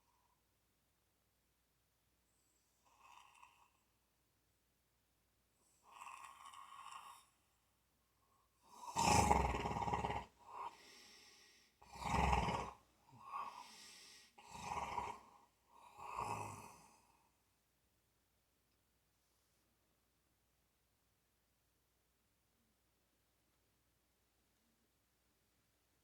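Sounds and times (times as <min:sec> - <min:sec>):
rattling snores: 0:02.9 - 0:03.8, 0:05.9 - 0:07.4, 0:08.8 - 0:10.8, 0:11.8 - 0:13.7, 0:14.4 - 0:17.0.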